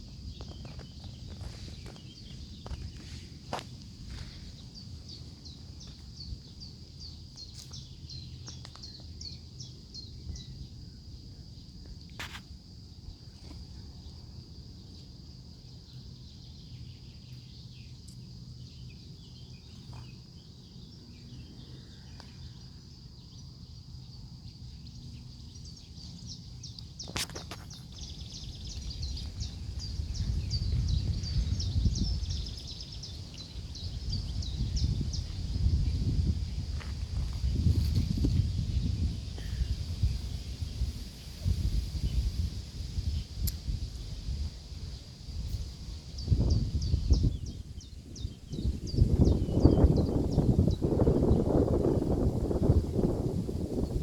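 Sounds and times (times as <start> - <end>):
birds twittering: 15.8 - 36.8, 45.9 - 51.8.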